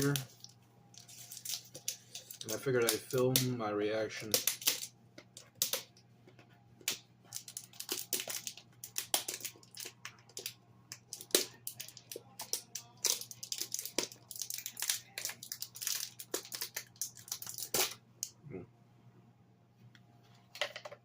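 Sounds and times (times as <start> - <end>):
packaging crackling and crinkling: 0.0 - 3.5, 6.8 - 18.0.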